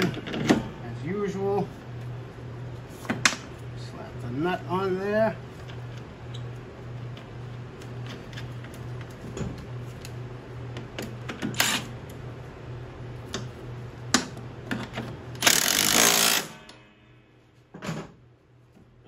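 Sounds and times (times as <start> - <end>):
steady low hum: 0.0 - 19.0
power tool driving a nut: 11.5 - 11.9, 15.4 - 16.6.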